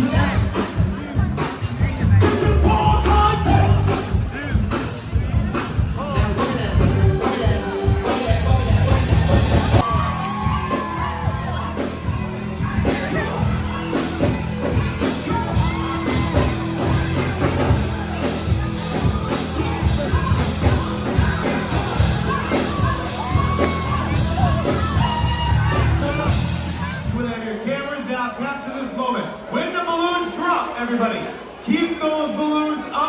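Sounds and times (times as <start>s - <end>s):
loud dance music with singer: 0.0s - 27.4s
people shouting: 6.1s - 27.3s.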